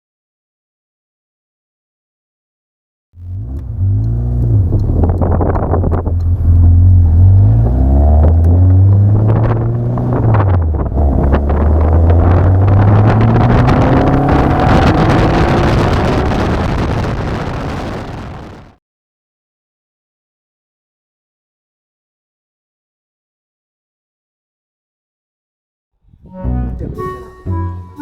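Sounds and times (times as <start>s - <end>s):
car engine pulling under load: 3.2s - 18.8s
wind noise on microphone: 3.2s - 18.8s, 26.1s - 27.8s.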